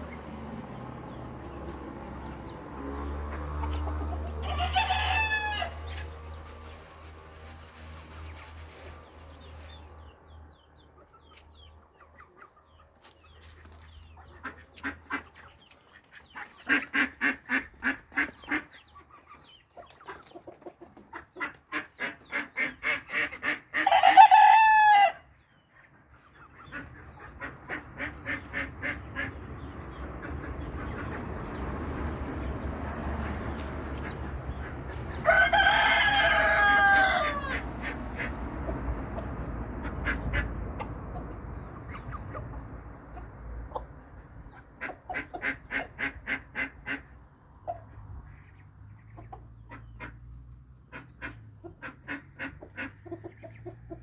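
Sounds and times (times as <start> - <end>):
chickens clucking: 0.0 - 54.0
rooster crowing: 4.4 - 5.8, 23.8 - 25.2, 35.2 - 37.6.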